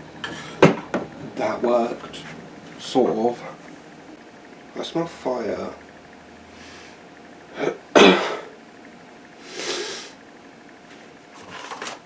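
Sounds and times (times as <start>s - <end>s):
breathy exhale: 6.5s - 7.0s, 9.4s - 10.2s
person sneezing: 7.6s - 8.5s.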